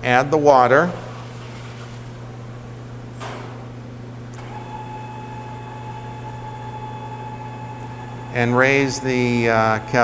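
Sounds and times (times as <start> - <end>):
low machinery hum: 0.0 - 10.0
steady high whine: 4.4 - 10.0.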